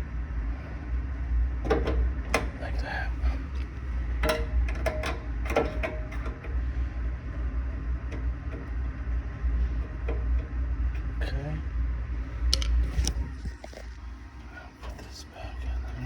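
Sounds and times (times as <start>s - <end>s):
steady low rumble: 0.0s - 16.0s
metal furnace parts clicking: 1.6s - 2.8s, 3.4s - 6.6s, 12.4s - 13.7s.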